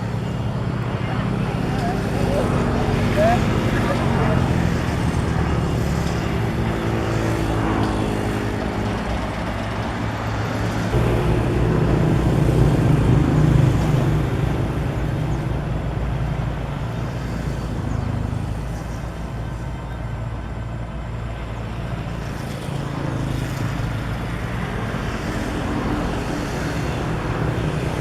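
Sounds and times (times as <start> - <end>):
bulldozer diesel engine running: 0.0 - 22.2.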